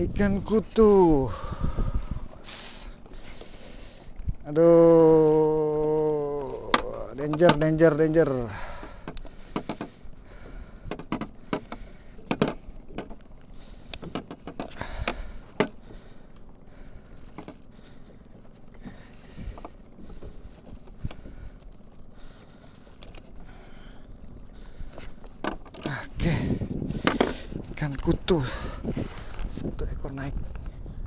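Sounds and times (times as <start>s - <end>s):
fishing tackle clicks and rattles: 5.8s - 23.5s, 24.3s - 30.7s.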